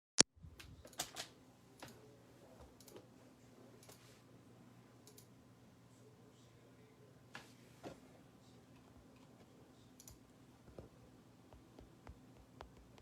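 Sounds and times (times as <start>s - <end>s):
faint steady hum: 0.4s - 13.0s
light irregular clicks and taps: 11.5s - 13.0s.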